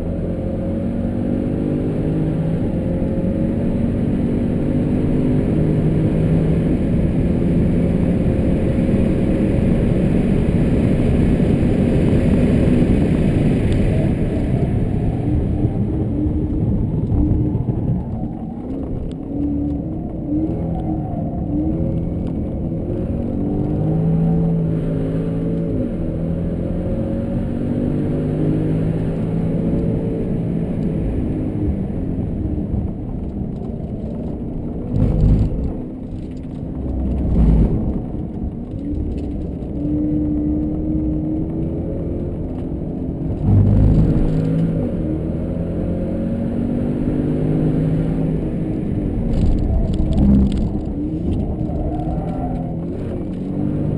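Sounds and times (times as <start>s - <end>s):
car engine revving through gears: 18.6s - 53.9s.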